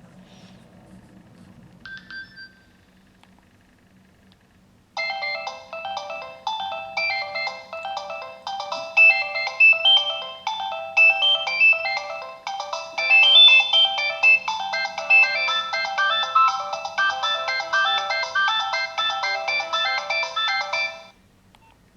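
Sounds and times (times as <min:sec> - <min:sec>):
mobile phone ringtone melody: 0:05.0 - 0:21.1.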